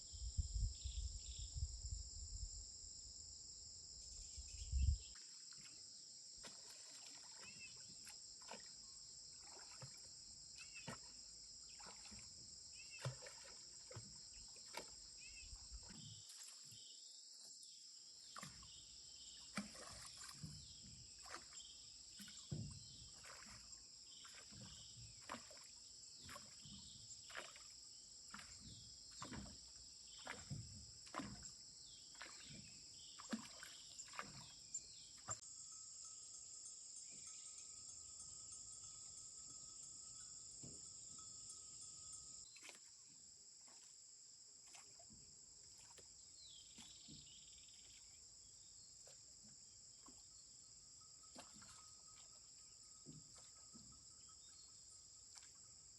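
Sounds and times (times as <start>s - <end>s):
insects droning: 0.0s - 55.9s
paddle strokes in water: 5.0s - 17.0s, 18.2s - 35.4s, 42.5s - 48.2s, 51.3s - 54.5s, 55.2s - 55.7s.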